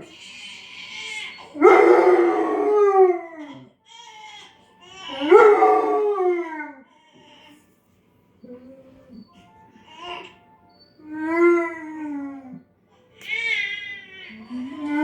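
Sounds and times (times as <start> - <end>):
baby crying on tv: 0.0 - 7.8, 8.4 - 15.0
dog howling: 1.3 - 3.7, 5.1 - 6.8, 11.0 - 12.6, 14.3 - 15.0.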